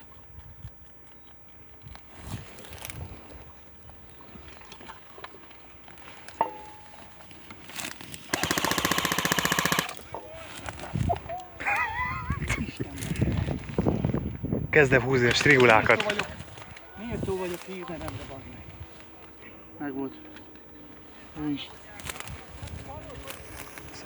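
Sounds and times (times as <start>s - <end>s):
airsoft gun automatic burst: 8.3s - 10.1s.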